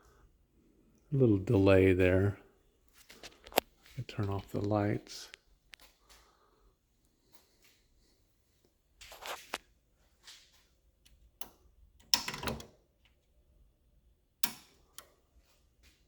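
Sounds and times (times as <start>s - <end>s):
sharp clicks and knocks: 11.0s - 13.2s.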